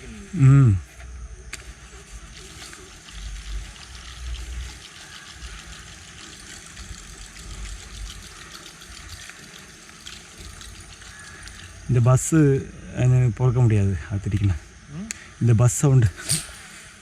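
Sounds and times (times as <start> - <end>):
churning splashing water: 2.4 - 11.8.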